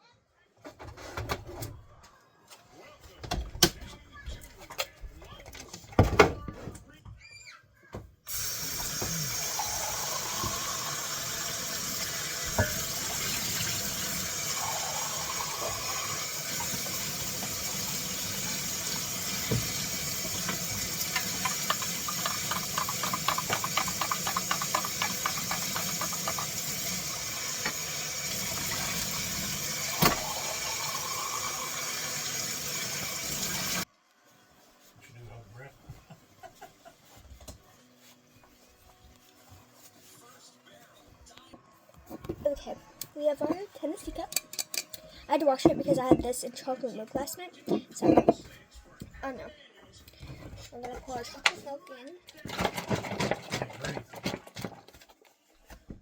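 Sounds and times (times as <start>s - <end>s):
tap running into sink: 8.4s - 31.7s
cup knocking: 12.4s - 13.0s, 20.4s - 26.6s, 47.7s - 48.5s.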